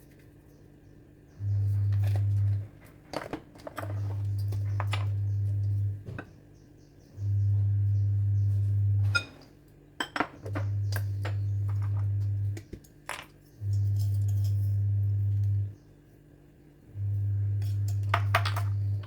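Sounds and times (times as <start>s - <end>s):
loud low hum: 1.4s - 2.8s, 3.9s - 6.3s, 7.2s - 9.4s, 10.4s - 12.7s, 13.6s - 15.8s, 16.8s - 19.0s.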